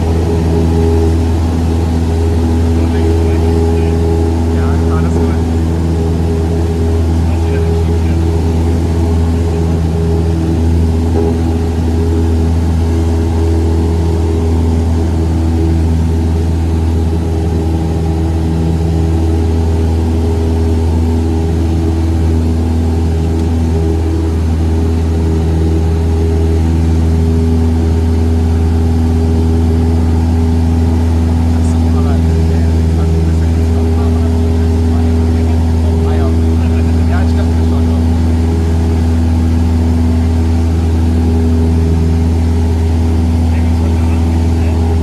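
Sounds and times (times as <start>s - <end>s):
propeller plane engine drone: 0.0s - 45.0s.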